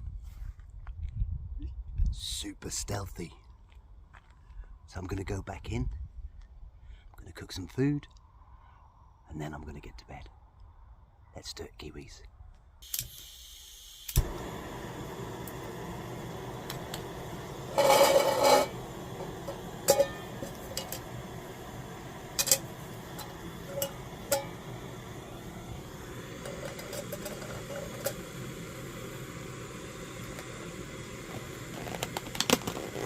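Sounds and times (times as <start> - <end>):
steady hiss: 12.8 - 33.0
metal pot clattering: 17.7 - 21.1, 22.3 - 24.6, 26.4 - 28.2
cookware clicks and clinks: 19.9 - 21.1.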